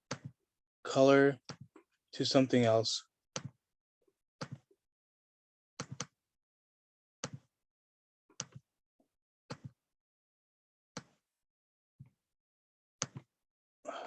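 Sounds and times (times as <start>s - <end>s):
computer mouse clicks: 8.3s - 8.6s, 13.0s - 13.3s.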